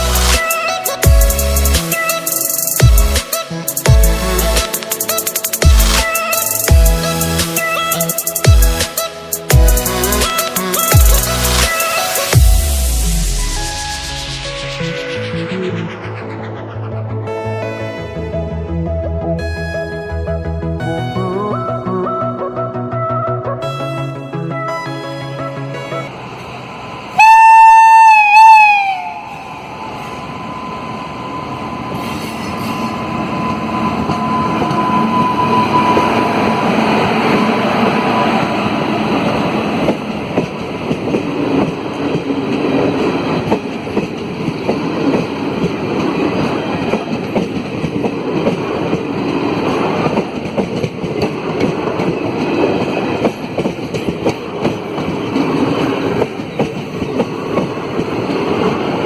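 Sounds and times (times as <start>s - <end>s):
locomotive horn blasts: 27.2s - 29.4s
train wheels clattering over rail joints: 39.8s - 59.0s.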